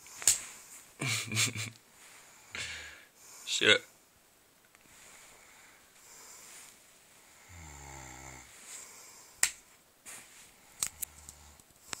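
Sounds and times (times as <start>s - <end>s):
man snoring: 7.4s - 8.6s, 10.9s - 11.6s.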